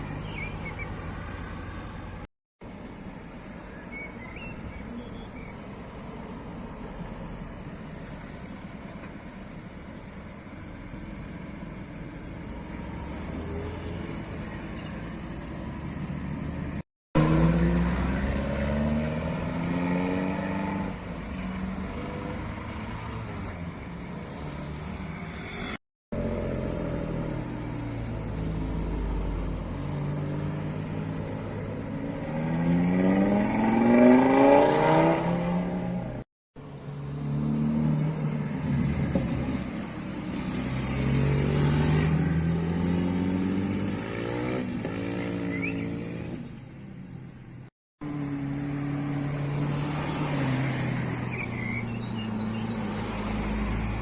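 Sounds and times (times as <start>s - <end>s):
sports car engines revving: 17.2s - 21.0s, 26.2s - 46.6s.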